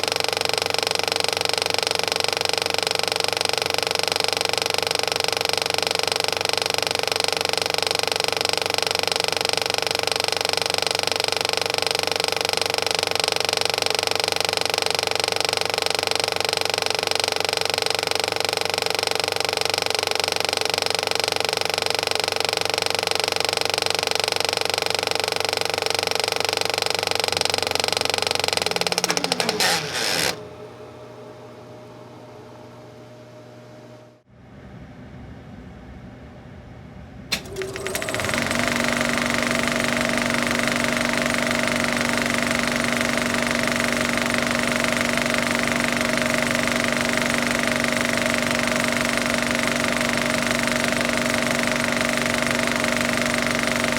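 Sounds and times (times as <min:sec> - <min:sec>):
film projector running: 0:00.0 - 0:30.5, 0:37.3 - 0:53.9.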